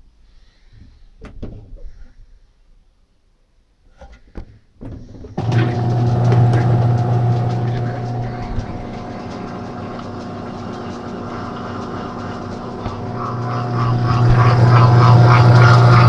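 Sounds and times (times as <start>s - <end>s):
washing machine motor humming: 5.2s - 16.0s.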